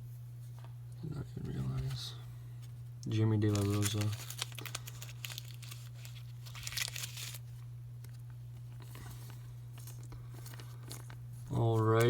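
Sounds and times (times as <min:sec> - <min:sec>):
steady low hum: 0:00.0 - 0:12.0
wrappers rustling and crackling: 0:03.4 - 0:12.0.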